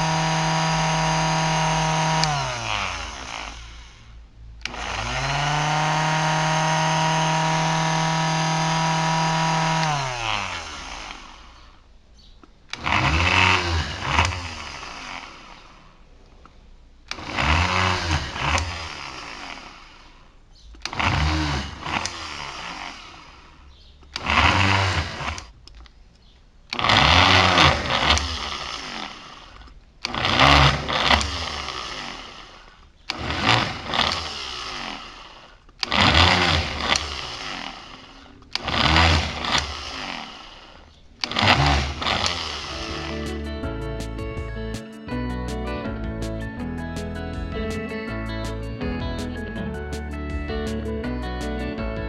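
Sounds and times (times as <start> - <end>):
drill motor whining: 0.0 - 11.8, 12.7 - 16.0, 17.1 - 25.6, 26.7 - 43.6.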